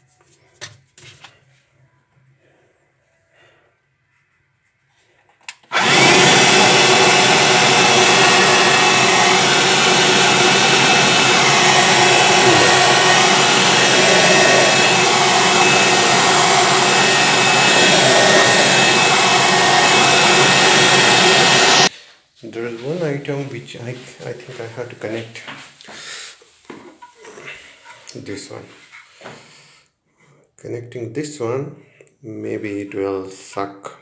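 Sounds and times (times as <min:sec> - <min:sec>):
handheld vacuum cleaner running: 0:05.6 - 0:21.9.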